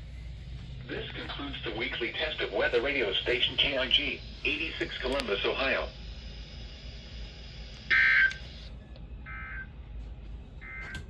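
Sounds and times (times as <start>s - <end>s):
faint radio hiss: 0.9s - 6.0s.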